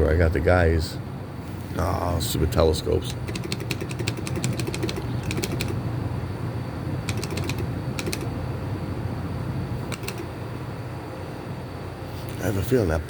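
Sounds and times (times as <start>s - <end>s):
steady low hum: 0.0s - 13.0s
rapid light clicks: 3.2s - 5.8s, 7.0s - 8.3s, 9.9s - 10.3s.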